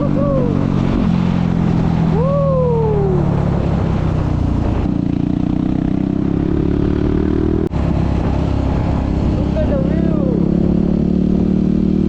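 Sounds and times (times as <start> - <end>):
motorcycle engine accelerating: 0.0 - 12.0.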